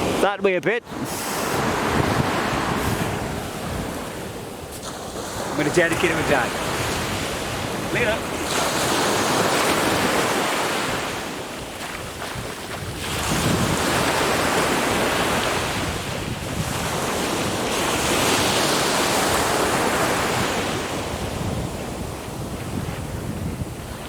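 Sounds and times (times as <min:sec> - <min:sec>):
sea waves breaking on beach: 0:00.0 - 0:24.0
wind buffeting microphone: 0:00.8 - 0:24.0.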